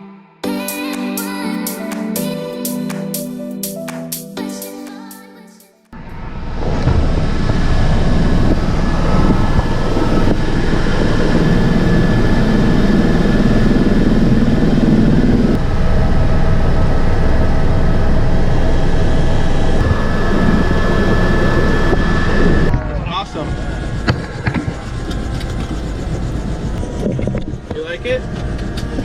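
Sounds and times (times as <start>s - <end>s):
helicopter running: 6.0s - 29.0s.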